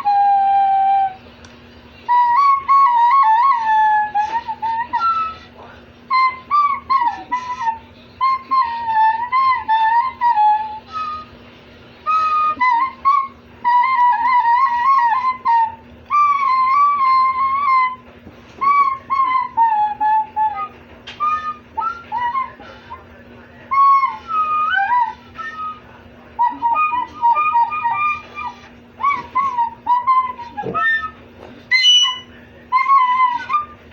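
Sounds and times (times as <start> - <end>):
recorder playing high notes: 26.4 - 33.9.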